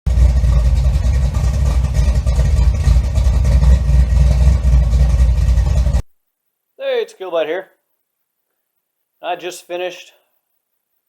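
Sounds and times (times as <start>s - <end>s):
car engine rumbling: 0.1s - 6.1s.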